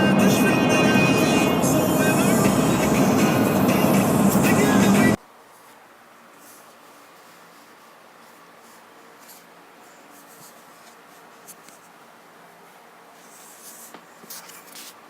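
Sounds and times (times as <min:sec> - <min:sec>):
low steady hum: 0:00.0 - 0:10.2
faint scratching and rustling: 0:05.4 - 0:15.0.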